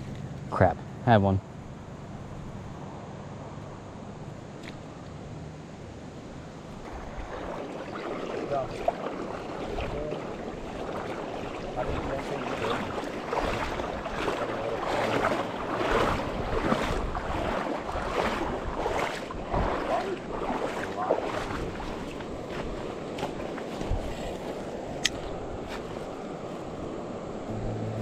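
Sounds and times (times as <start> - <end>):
river water rushing: 4.8 - 28.0
repeated splashes: 6.6 - 26.3
wind on microphone: 6.8 - 28.0.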